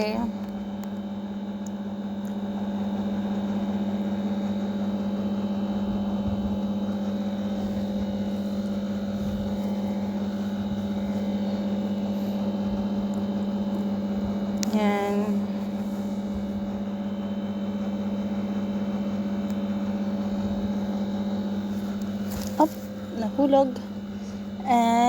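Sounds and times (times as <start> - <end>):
low mechanical hum: 0.0 - 25.0.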